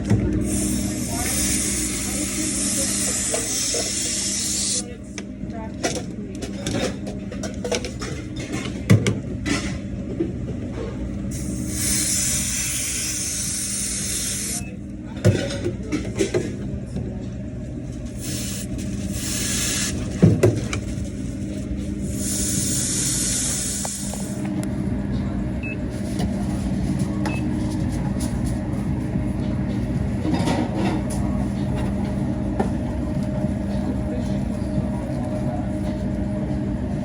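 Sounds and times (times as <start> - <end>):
refrigeration unit humming: 0.0 - 37.0
bursts of hiss: 0.5 - 4.8, 11.3 - 14.6, 18.2 - 20.0, 22.2 - 24.4.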